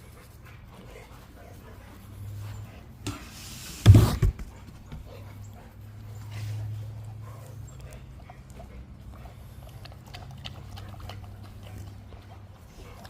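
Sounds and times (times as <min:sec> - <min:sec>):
dog vocalizing: 0:07.1 - 0:13.0.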